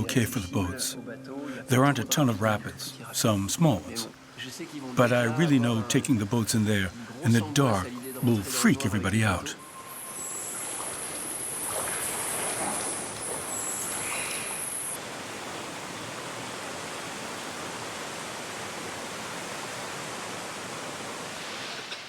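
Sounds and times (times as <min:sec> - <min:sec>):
river water rushing: 0:00.0 - 0:22.0
high steady buzz: 0:05.0 - 0:15.0.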